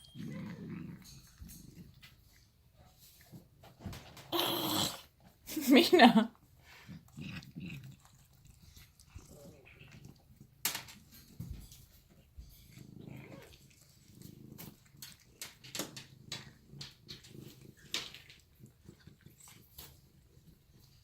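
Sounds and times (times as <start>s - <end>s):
cat growling low: 0.0s - 2.3s, 4.3s - 5.2s, 6.6s - 10.4s, 12.6s - 20.8s.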